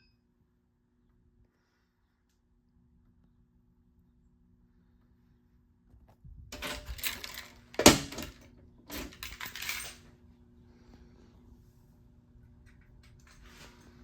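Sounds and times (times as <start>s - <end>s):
clattering handling noise: 6.5s - 10.0s.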